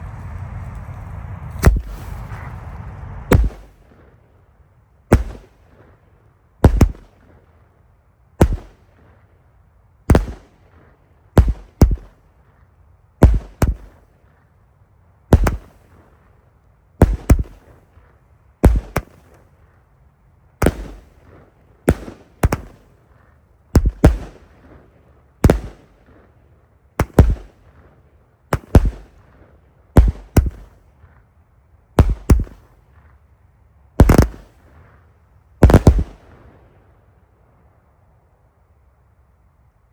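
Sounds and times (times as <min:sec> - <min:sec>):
firework bangs: 0:00.0 - 0:04.2, 0:05.1 - 0:06.0, 0:06.6 - 0:07.4, 0:08.4 - 0:09.0, 0:10.1 - 0:12.2, 0:13.2 - 0:14.1, 0:15.3 - 0:16.2, 0:17.0 - 0:19.5, 0:20.6 - 0:23.2, 0:23.8 - 0:26.4, 0:27.0 - 0:30.8, 0:32.0 - 0:33.1, 0:34.0 - 0:36.8.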